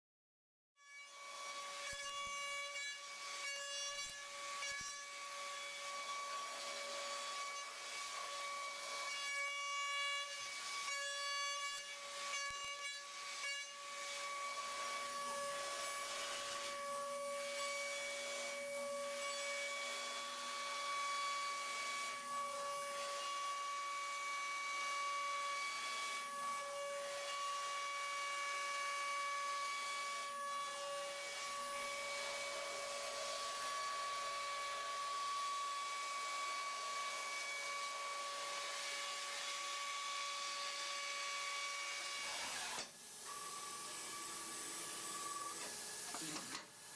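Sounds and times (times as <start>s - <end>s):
hiss of cutting: 42.4s - 46.9s.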